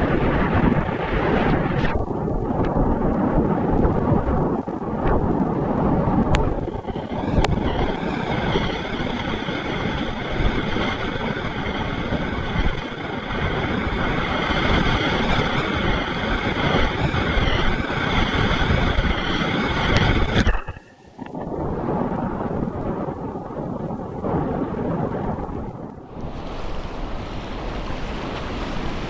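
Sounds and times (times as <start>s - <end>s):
wind buffeting microphone: 0.0s - 29.0s
river rapids rushing: 26.1s - 29.0s.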